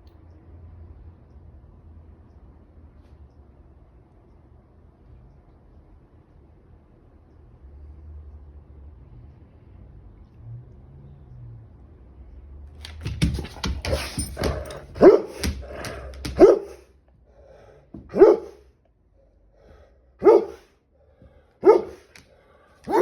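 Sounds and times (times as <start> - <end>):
dog barking: 13.8 - 16.9, 18.0 - 18.6, 20.2 - 20.7, 21.6 - 22.2.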